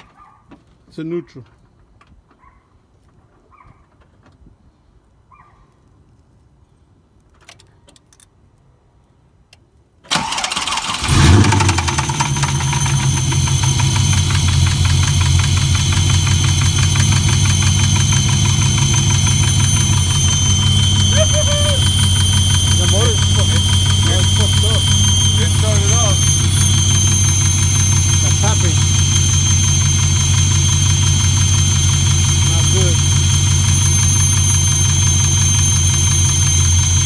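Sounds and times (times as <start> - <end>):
engine cranking and starting: 10.1 - 37.0
engine idling: 10.1 - 37.0.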